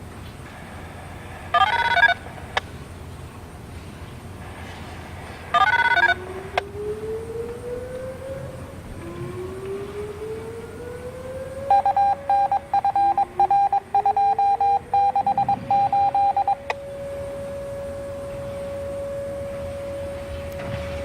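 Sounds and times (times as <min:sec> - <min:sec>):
outdoor warning sirens winding up: 0:00.0 - 0:21.0
pulsing electronic beeps: 0:05.5 - 0:06.2, 0:11.7 - 0:17.9.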